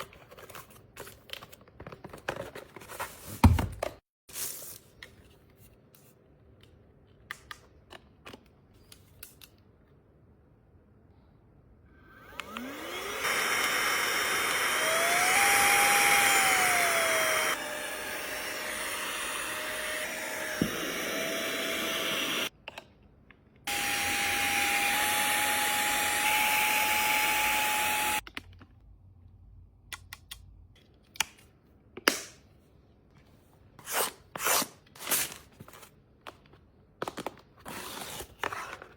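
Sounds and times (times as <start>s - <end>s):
electric motor whining: 12.2s - 22.5s, 23.7s - 28.2s.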